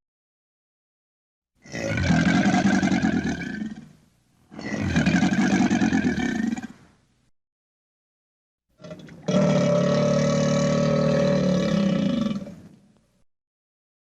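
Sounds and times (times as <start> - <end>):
crocodile growling: 1.6 - 3.9, 4.5 - 6.8, 8.8 - 12.7.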